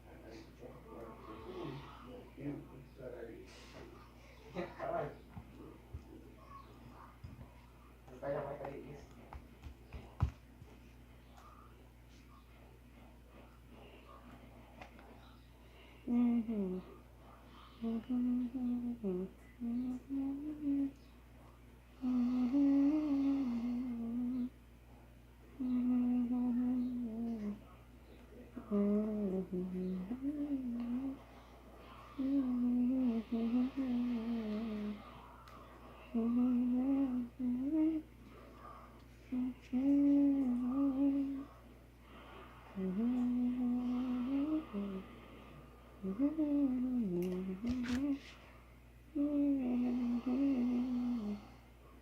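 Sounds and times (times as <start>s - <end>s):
girl humming a slow tune: 15.8s - 17.0s, 17.7s - 21.2s, 21.9s - 24.6s, 25.5s - 27.7s, 28.6s - 31.2s, 32.2s - 35.0s, 36.1s - 38.1s, 39.3s - 41.5s, 42.8s - 45.1s, 46.0s - 48.3s, 49.1s - 51.6s.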